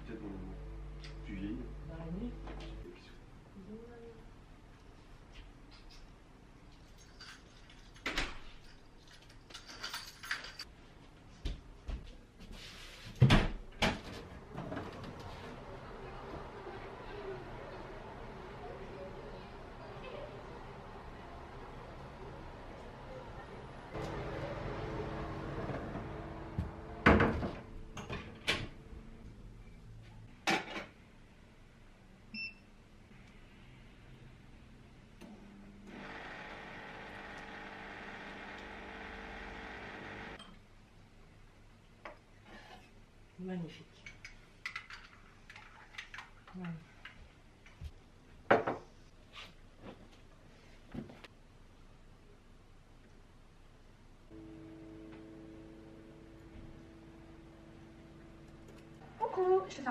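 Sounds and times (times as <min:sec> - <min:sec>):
knocks and clinks: 0:08.6 - 0:10.7
kitchen appliance humming: 0:14.4 - 0:29.2, 0:35.2 - 0:40.4, 0:54.3 - 0:59.9.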